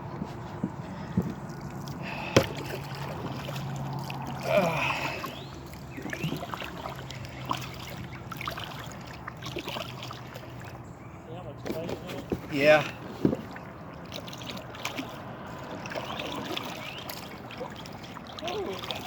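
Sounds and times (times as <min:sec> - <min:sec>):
water around kayak hull: 0:00.0 - 0:19.0.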